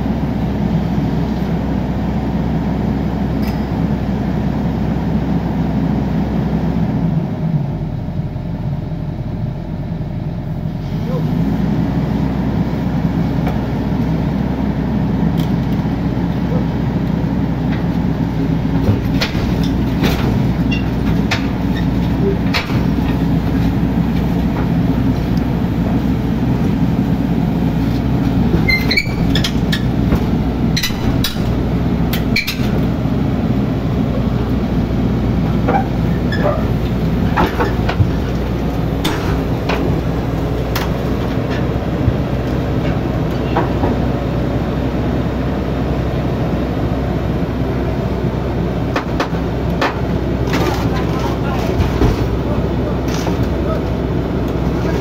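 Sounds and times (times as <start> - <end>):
excavator diesel engine: 0.0 - 55.0
metallic clanks and knocks: 18.8 - 24.7, 28.5 - 32.9, 39.0 - 40.1.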